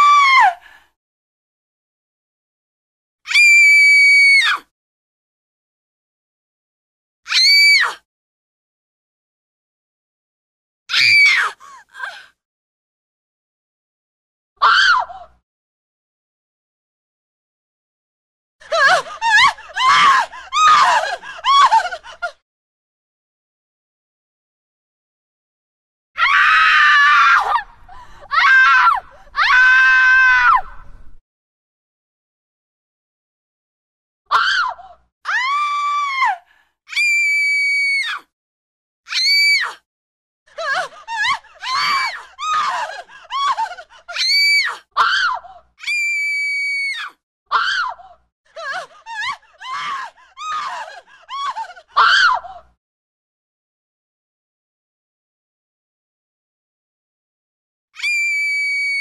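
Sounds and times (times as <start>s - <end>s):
woman screaming: 0.0s - 0.5s, 10.9s - 11.4s, 18.7s - 22.0s, 26.2s - 27.6s, 28.2s - 30.6s, 35.3s - 38.2s, 49.1s - 52.5s, 58.0s - 59.0s.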